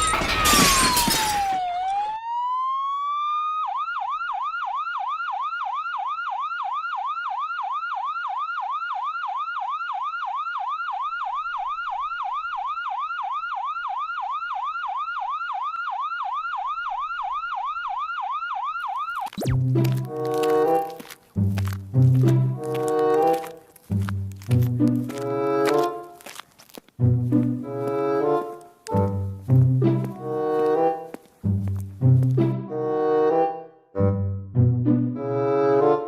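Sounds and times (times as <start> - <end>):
siren wailing and yelping: 11.1 - 19.6.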